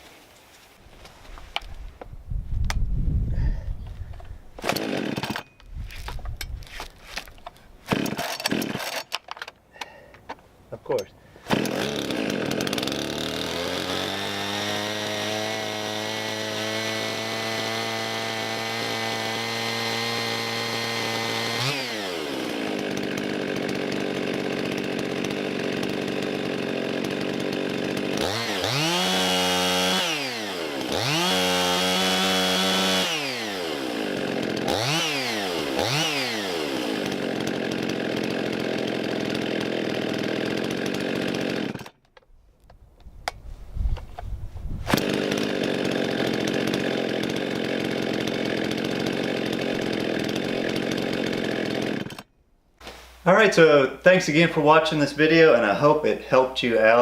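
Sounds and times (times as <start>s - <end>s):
chainsaw engine idling and revving: 4.6s - 9.2s, 11.4s - 42.0s, 44.9s - 52.3s.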